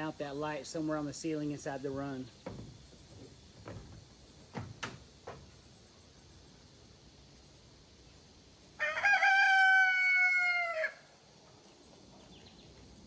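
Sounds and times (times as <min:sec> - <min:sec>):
rooster crowing: 0:08.8 - 0:11.1.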